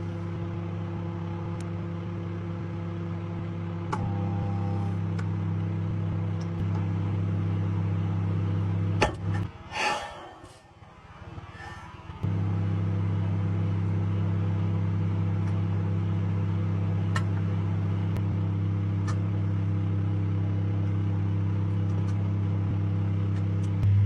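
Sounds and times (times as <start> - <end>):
microwave oven humming: 0.0 - 9.5, 12.2 - 24.0.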